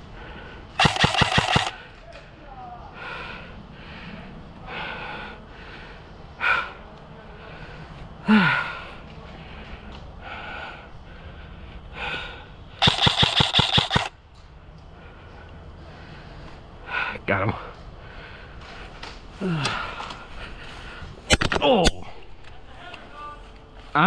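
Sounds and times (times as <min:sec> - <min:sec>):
airsoft rifle automatic fire: 0:00.8 - 0:01.8, 0:12.8 - 0:14.1.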